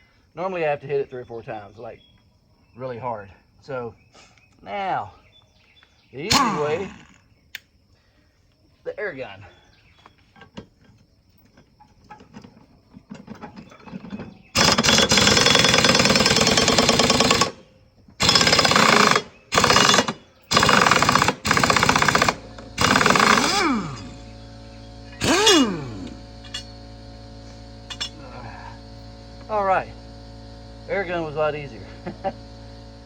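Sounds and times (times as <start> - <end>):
impact wrench rattling bursts: 6.3 - 7.2, 13.1 - 17.6, 18.2 - 33.0
steady hum: 21.8 - 33.0.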